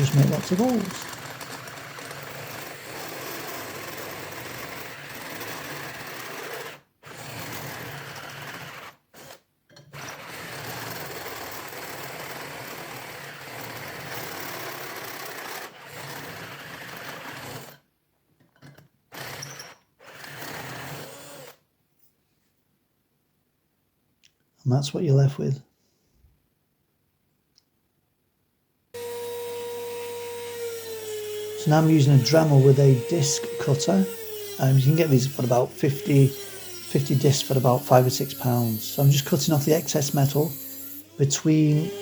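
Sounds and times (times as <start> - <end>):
electric drill boring through metal: 0.0 - 9.4, 19.1 - 21.6, 29.0 - 42.0.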